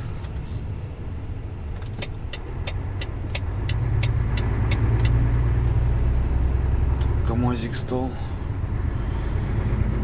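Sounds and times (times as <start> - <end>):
diesel engine drone: 0.0 - 10.0
turn signal ticking: 1.6 - 7.2.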